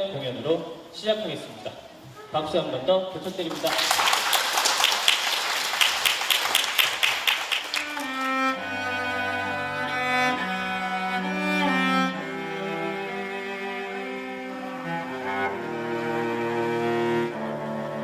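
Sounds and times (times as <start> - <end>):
audience applauding: 3.4 - 8.5
cello ensemble playing: 7.6 - 18.0.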